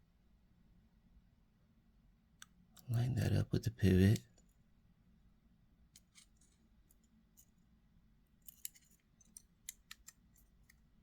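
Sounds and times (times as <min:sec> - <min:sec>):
small clicks of knife parts: 0:08.4 - 0:10.9.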